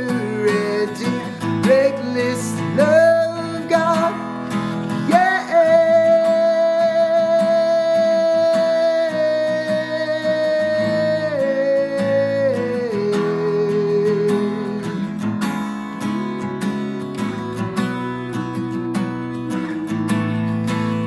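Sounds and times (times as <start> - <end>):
acoustic guitar strumming: 0.0 - 21.0
long wordless sung note: 16.9 - 21.0.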